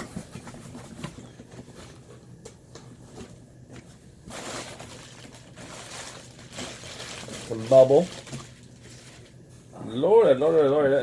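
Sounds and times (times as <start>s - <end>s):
packing material rustling: 4.2s - 9.4s.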